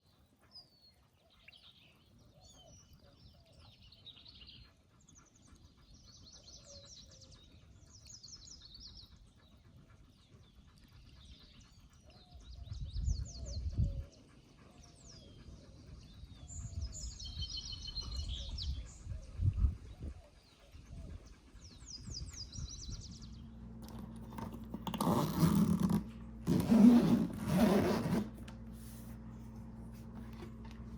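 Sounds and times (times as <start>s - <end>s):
small birds chirping: 0.0s - 27.1s.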